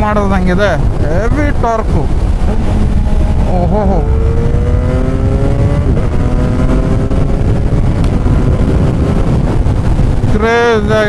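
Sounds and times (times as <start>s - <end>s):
wind rushing over microphone: 0.0s - 11.0s
motorcycle engine accelerating: 2.0s - 10.3s.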